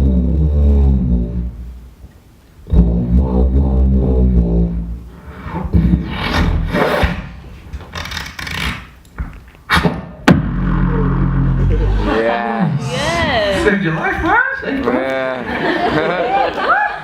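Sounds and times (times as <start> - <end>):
beatboxing droning tones: 0.0 - 1.6, 2.6 - 7.1, 10.3 - 12.0.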